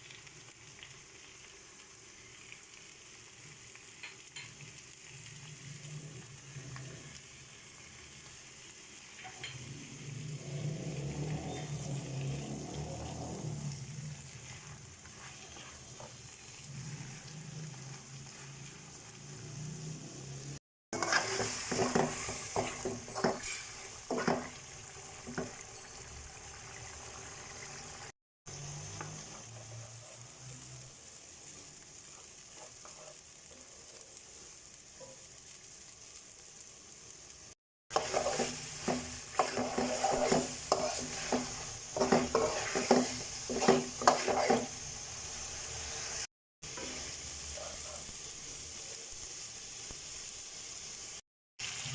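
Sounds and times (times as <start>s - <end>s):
food sizzling in a pot: 0.0s - 51.9s
spatula scraping a pot: 14.2s - 18.7s, 21.0s - 24.6s, 32.5s - 33.3s, 37.9s - 44.8s.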